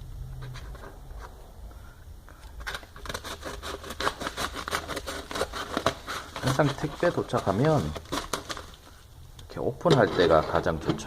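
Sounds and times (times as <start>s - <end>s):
packaging being cut and torn: 2.6s - 8.9s.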